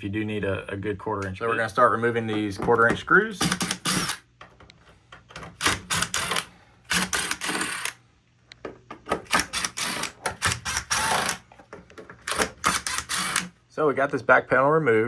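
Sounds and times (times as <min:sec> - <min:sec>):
power driver running: 0:03.3 - 0:04.3, 0:05.5 - 0:08.0, 0:09.1 - 0:11.4, 0:12.2 - 0:13.5
clicks and rattles of screws: 0:03.4 - 0:08.0, 0:09.0 - 0:13.5.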